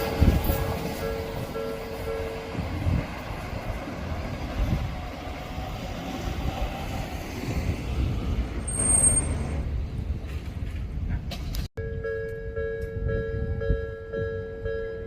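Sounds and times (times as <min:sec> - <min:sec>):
high train squeal: 0:00.0 - 0:03.0, 0:08.4 - 0:09.8
train wheels rumbling on rails: 0:00.0 - 0:11.7.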